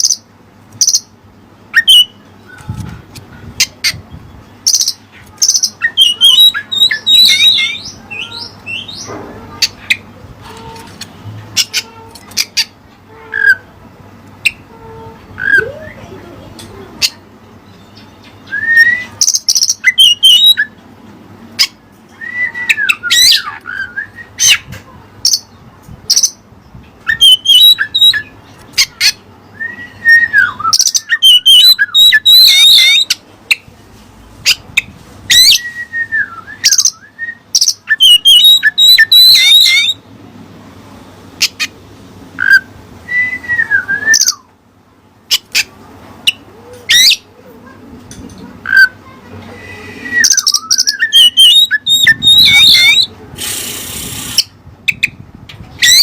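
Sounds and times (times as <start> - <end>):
bird singing varied phrases: 0.0 - 2.8, 3.6 - 10.1, 15.4 - 16.2, 17.0 - 20.8, 21.6 - 33.6, 35.3 - 40.0, 42.4 - 44.5, 46.3 - 47.3, 48.6 - 53.1, 55.8 - 56.0.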